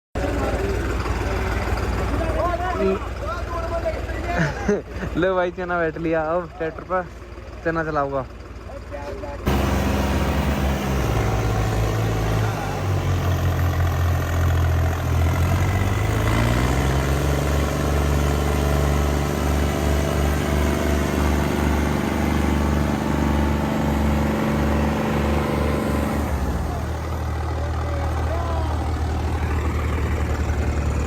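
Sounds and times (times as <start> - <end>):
tractor engine revving under load: 9.4 - 31.0.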